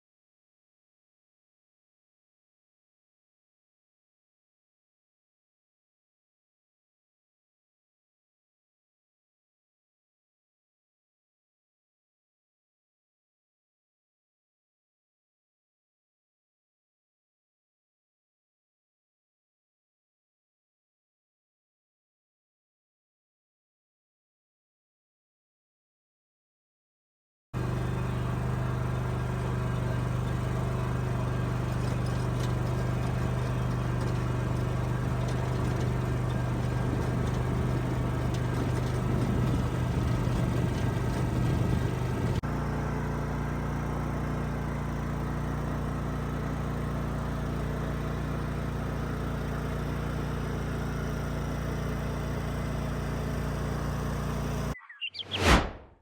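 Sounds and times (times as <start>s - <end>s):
lawn mower engine running: 27.6s - 55.3s.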